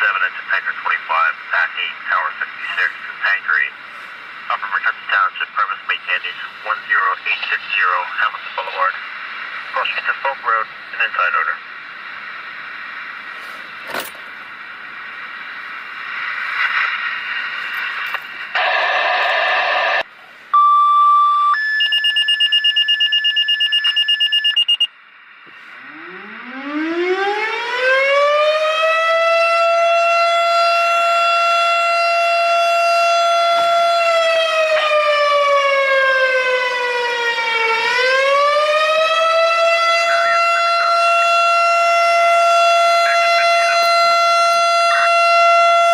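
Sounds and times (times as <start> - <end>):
radio static: 0.0 - 20.1, 42.6 - 45.9
air raid siren wailing: 25.7 - 45.9
pulsing two-pitch tone: 25.8 - 26.7.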